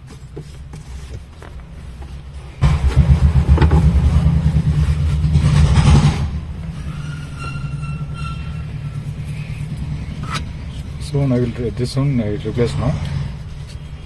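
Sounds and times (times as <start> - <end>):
vehicle rumble: 0.0 - 14.0.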